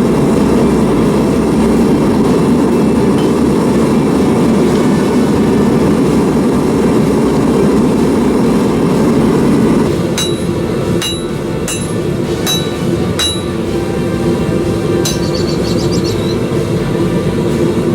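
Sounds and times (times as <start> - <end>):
gas forge burner rushing: 0.0 - 17.9
ringing metal strikes: 10.0 - 14.2, 15.0 - 15.8.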